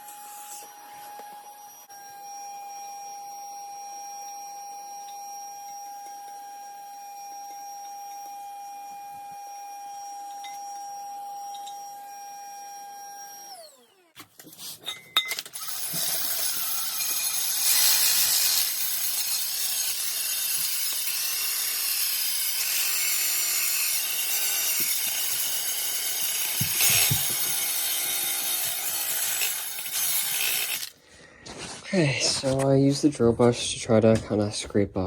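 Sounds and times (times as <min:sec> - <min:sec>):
small motor whine: 0:00.0 - 0:14.2, 0:15.5 - 0:30.9
wire brush scrubbing metal: 0:15.6 - 0:30.9.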